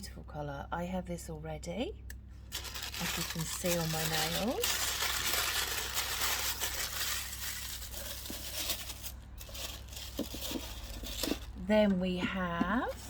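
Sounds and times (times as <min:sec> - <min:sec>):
paper and cardboard tearing: 0:02.5 - 0:11.6.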